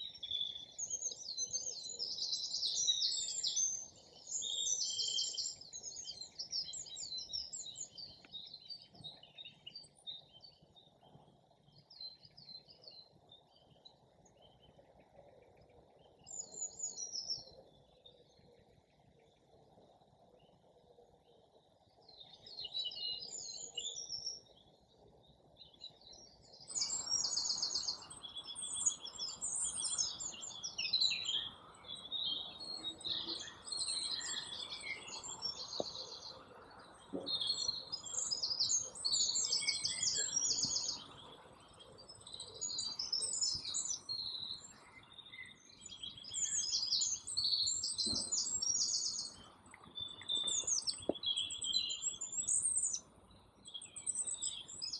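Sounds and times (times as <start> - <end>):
songbirds trilling and warbling: 0.0 - 54.9.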